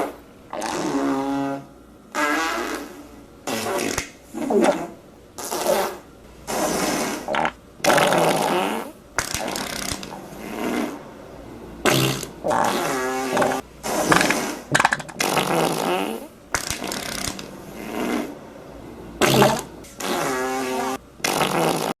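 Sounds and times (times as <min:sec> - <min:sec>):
fart sound effects: 0:00.0 - 0:11.0, 0:11.8 - 0:18.4, 0:19.2 - 0:22.0
crackling pops: 0:09.2 - 0:10.2, 0:16.5 - 0:17.5.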